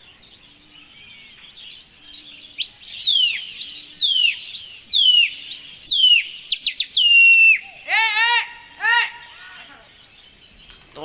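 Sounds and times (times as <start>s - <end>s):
loud sweeping whistles: 2.6s - 7.7s.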